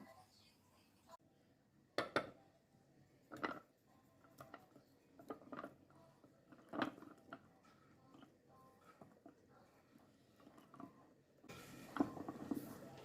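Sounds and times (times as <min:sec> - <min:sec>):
soft food preparation handling: 0:03.1 - 0:13.0.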